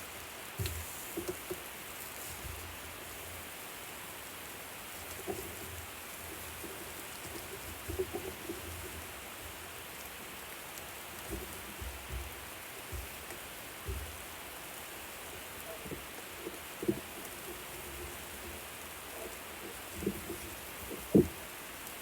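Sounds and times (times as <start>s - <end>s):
food sizzling on a grill: 0.0s - 22.0s
soft low knocks: 16.7s - 21.5s.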